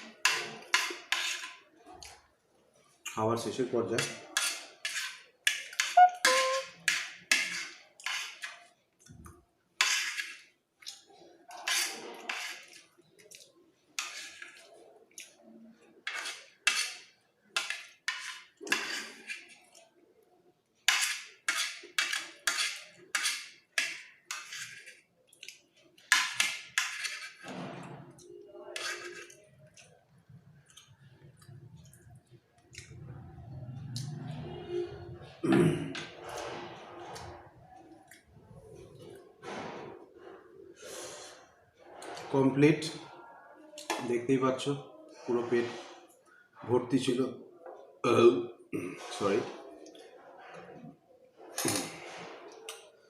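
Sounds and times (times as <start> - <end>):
spoon scraping a plate: 0.2 - 1.6, 4.0 - 8.6, 9.8 - 10.5, 11.5 - 13.4, 14.0 - 14.7, 16.0 - 19.8, 20.9 - 25.1, 26.0 - 29.9.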